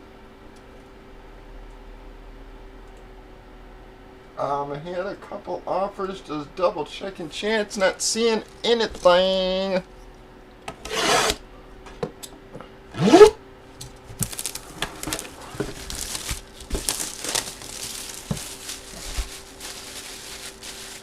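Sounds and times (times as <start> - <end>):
plastic wrapping crinkling: 7.8 - 9.3, 14.0 - 21.0.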